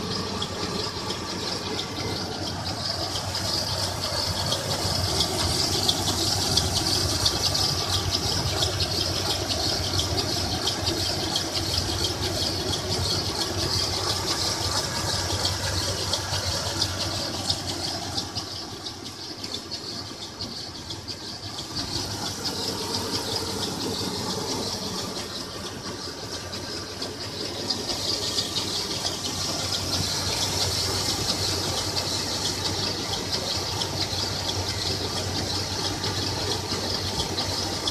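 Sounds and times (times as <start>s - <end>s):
engine running: 0.0s - 37.9s
high-pitched engine whine: 0.0s - 37.9s.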